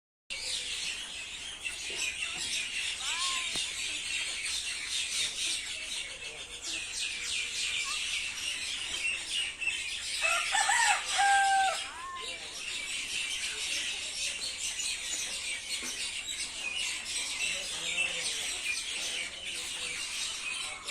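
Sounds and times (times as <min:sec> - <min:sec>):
small birds chirping: 0:00.3 - 0:20.9
rooster crowing: 0:10.2 - 0:12.0.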